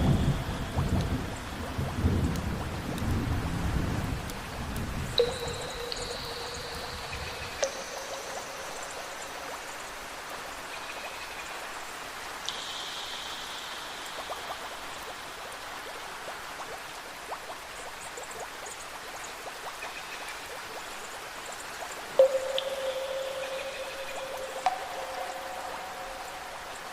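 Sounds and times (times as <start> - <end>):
heavy rain: 0.0 - 19.5.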